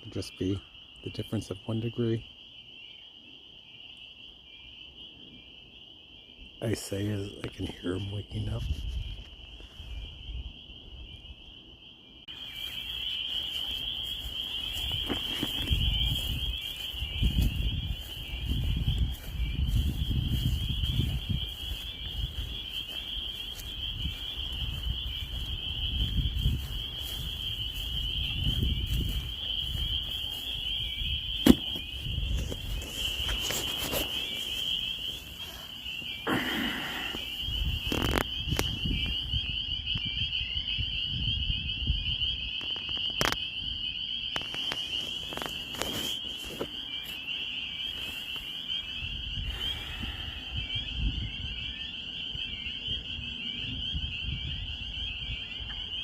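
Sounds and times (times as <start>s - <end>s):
frogs peeping in chorus: 0.0s - 56.0s.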